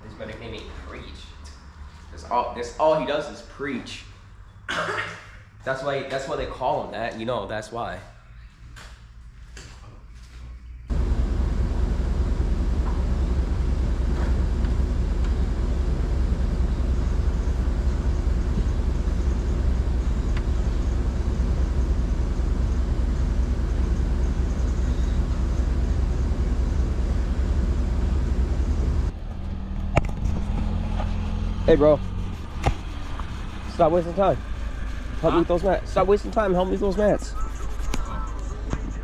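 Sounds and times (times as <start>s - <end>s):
vehicle rumble with road noise: 10.9s - 39.0s.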